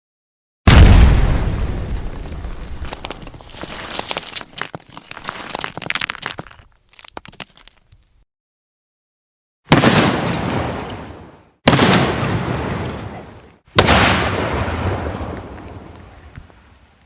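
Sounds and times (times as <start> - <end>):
explosion blasts with rumbling tail: 0.7 - 2.8, 13.8 - 15.5.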